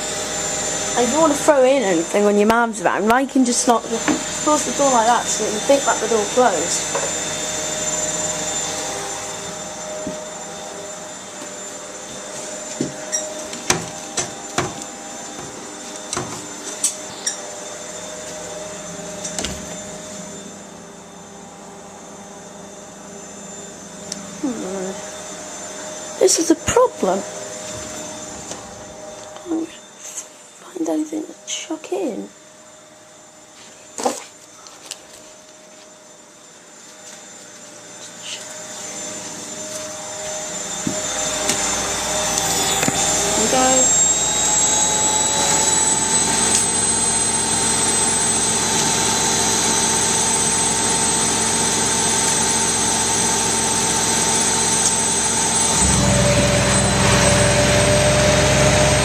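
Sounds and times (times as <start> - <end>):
washing machine motor hum: 0.0 - 16.8, 39.0 - 59.0.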